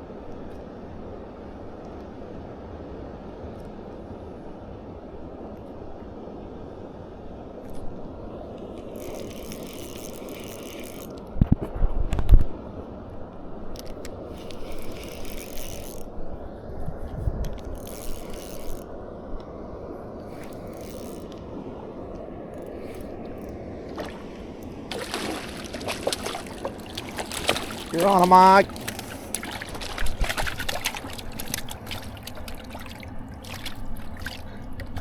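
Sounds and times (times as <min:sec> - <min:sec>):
fishing reel whirring: 0:08.8 - 0:11.2, 0:13.8 - 0:16.5, 0:17.5 - 0:19.0, 0:20.2 - 0:21.4, 0:22.4 - 0:23.6, 0:24.4 - 0:34.5.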